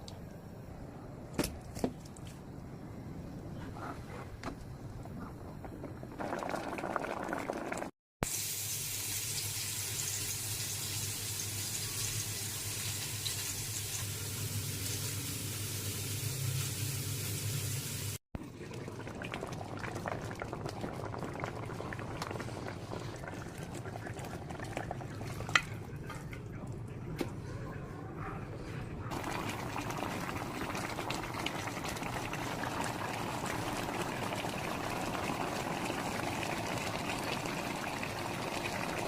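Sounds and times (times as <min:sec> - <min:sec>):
stew bubbling in a pot: 0:04.7 - 0:07.9, 0:18.4 - 0:26.7, 0:29.1 - 0:39.0.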